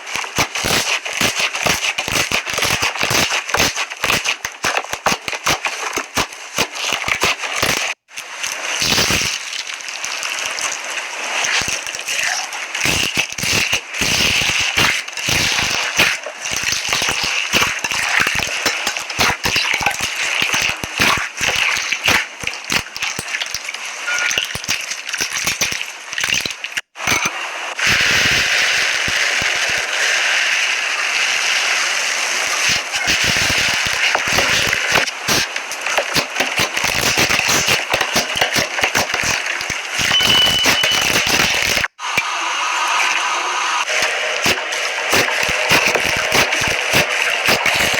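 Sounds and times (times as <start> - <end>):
slime squished by hand: 0.0 - 8.0, 8.8 - 23.7, 32.6 - 41.9.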